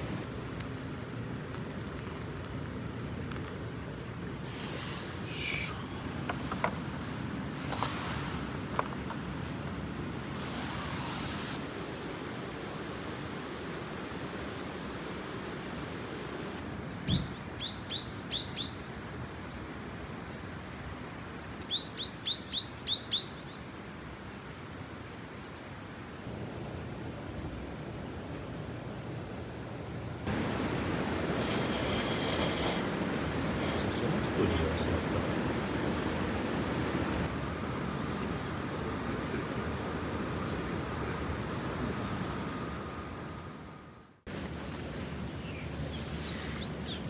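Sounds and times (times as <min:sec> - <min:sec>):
steady background hiss: 0:00.0 - 0:47.0
bird chirping: 0:45.3 - 0:47.0.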